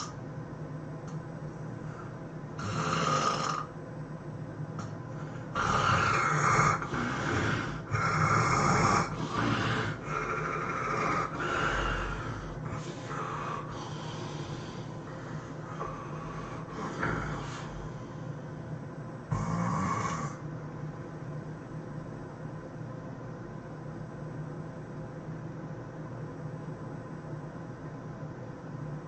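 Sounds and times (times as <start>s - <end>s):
person snoring heavily: 1.9s - 3.7s, 5.2s - 18.2s, 19.3s - 20.4s.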